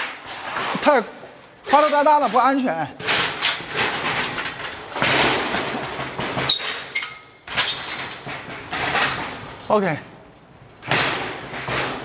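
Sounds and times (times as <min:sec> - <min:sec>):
wooden boards scraping: 0:00.0 - 0:06.6.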